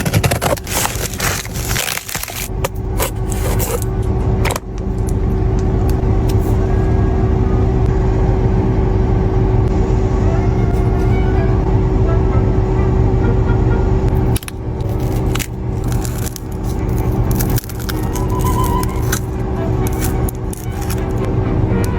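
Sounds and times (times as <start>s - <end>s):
small objects clicking and scraping: 0.0s - 4.1s, 14.3s - 21.3s
car engine rumbling: 0.0s - 21.9s
faint cabin hum: 0.0s - 21.9s.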